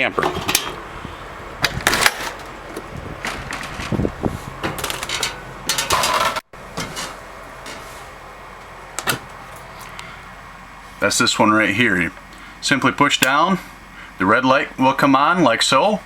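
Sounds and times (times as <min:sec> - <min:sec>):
knocks and clunks of handling: 0:01.6 - 0:04.0, 0:04.6 - 0:07.9.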